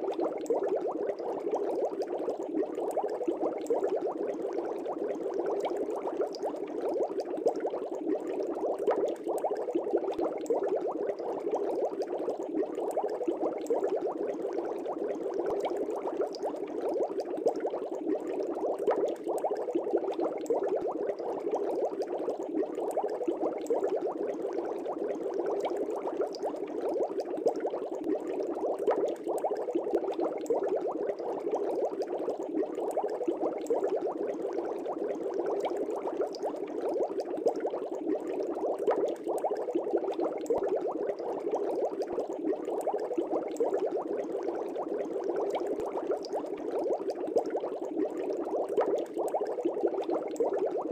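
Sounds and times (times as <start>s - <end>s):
air bubbling in fish tank: 0.0s - 50.9s.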